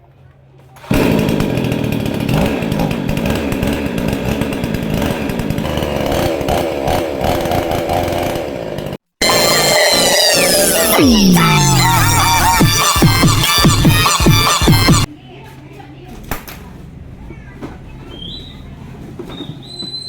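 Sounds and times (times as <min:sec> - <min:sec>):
chainsaw engine revving: 0:00.8 - 0:15.1
electronic music with sweeping glides: 0:09.2 - 0:15.1.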